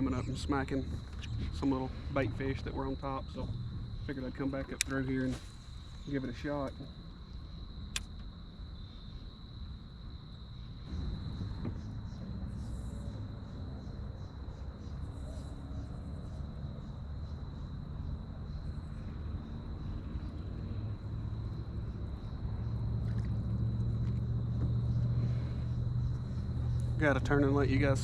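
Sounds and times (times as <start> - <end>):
low rumble: 0.0 - 6.6, 10.5 - 16.9
insects trilling: 0.0 - 28.0.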